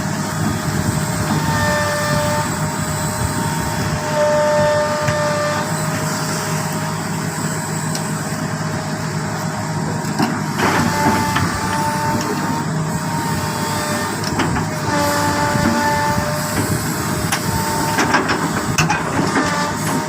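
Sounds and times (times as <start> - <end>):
excavator diesel engine: 0.0 - 20.0
whining tones: 0.2 - 9.2.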